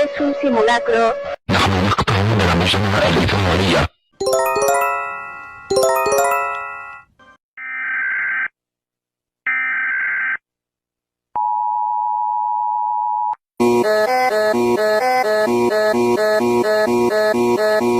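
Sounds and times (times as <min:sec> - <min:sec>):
steady alert tone: 0:04.2 - 0:07.0
bell-like chime notes: 0:04.2 - 0:07.1.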